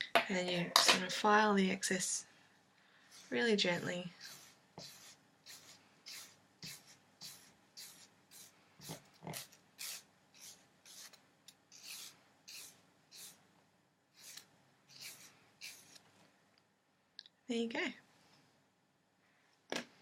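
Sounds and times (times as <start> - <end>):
nail file rasping: 3.8 - 13.4, 14.2 - 16.0.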